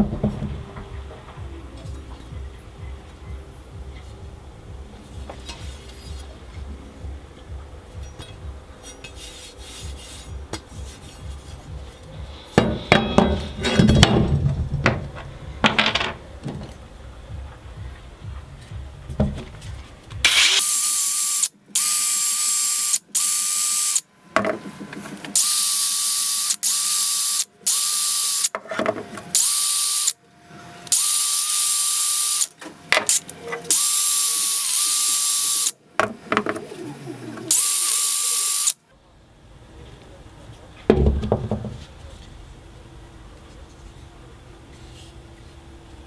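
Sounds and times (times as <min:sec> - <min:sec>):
power tool whining: 0:20.3 - 0:24.1, 0:24.7 - 0:28.5, 0:29.1 - 0:35.8, 0:36.5 - 0:38.8
knocks on a workbench: 0:40.9 - 0:41.8.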